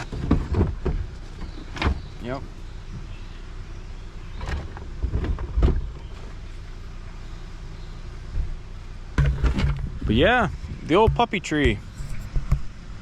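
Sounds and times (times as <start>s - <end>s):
car cabin rumble: 0.0s - 13.0s
short knocks or rattles: 9.2s - 10.1s, 10.9s - 12.6s.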